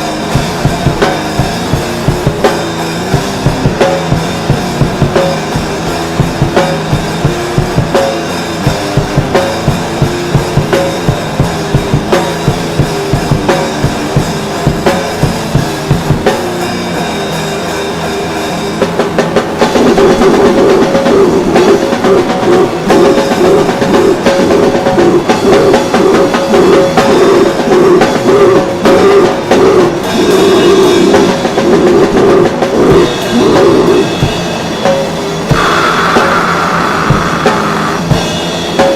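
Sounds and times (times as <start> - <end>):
drum beat: 0.0 - 38.9
rock music: 0.0 - 38.9.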